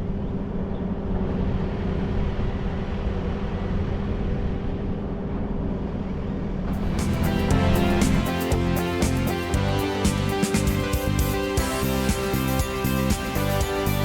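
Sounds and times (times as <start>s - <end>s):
diesel engine running: 6.7s - 11.3s
music: 6.7s - 14.0s.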